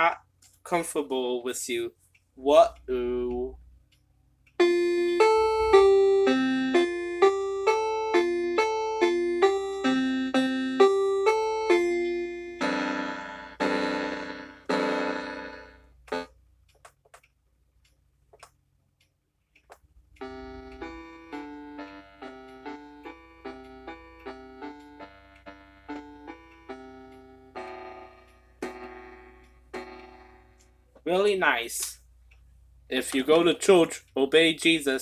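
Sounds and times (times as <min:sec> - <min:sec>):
electronic keyboard tune: 0:04.6 - 0:16.3, 0:20.2 - 0:31.2.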